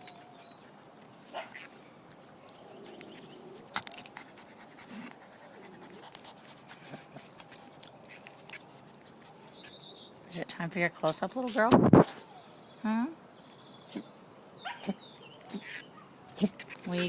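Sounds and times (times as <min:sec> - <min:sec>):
puppy vocalisations: 0:13.9 - 0:17.0.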